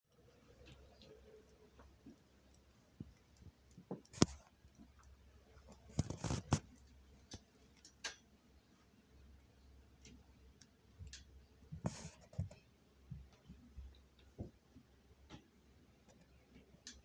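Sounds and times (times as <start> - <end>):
sharp clicks and knocks: 3.0 - 4.5.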